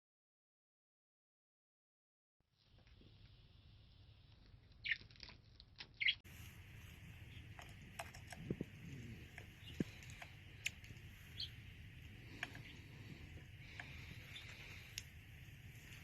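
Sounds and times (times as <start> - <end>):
faint steady hiss: 6.3 - 16.0
small clicks and taps: 7.5 - 11.1.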